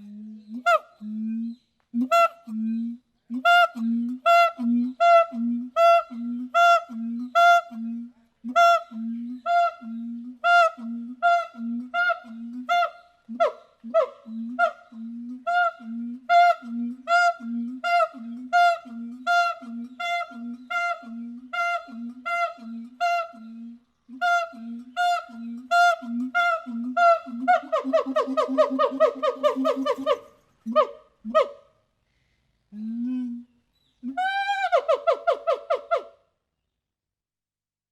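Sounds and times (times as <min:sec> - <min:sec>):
monkey hooting calls: 0:24.2 - 0:31.6.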